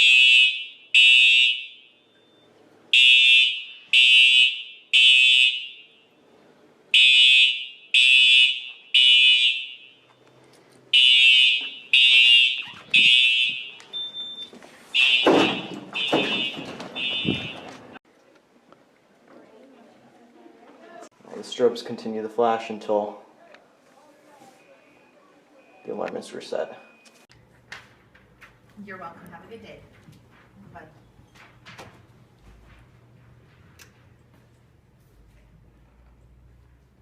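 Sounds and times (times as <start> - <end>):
fire alarm horn beeps: 0.0 - 6.2, 6.9 - 10.1, 10.9 - 17.9.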